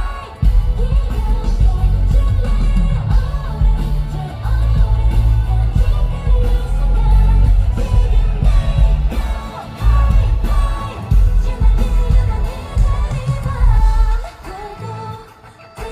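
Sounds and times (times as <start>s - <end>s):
pop-rock song with singing: 0.0s - 15.9s.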